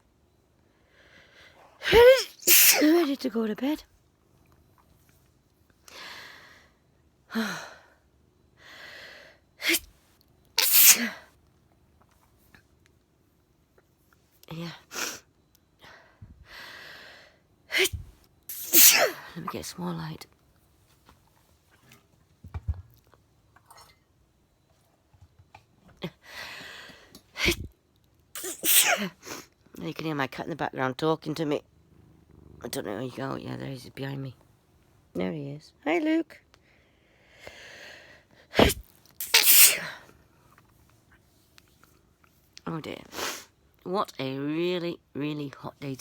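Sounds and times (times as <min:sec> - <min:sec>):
soft breathy hiss: 0:00.6 - 0:03.1, 0:10.6 - 0:11.2, 0:14.8 - 0:19.7, 0:28.4 - 0:29.5, 0:36.6 - 0:40.6, 0:43.0 - 0:43.6
woman sneezing: 0:01.8 - 0:03.1, 0:09.6 - 0:09.9, 0:10.6 - 0:11.2, 0:17.7 - 0:19.3, 0:27.4 - 0:27.7, 0:28.4 - 0:29.2, 0:38.5 - 0:40.0.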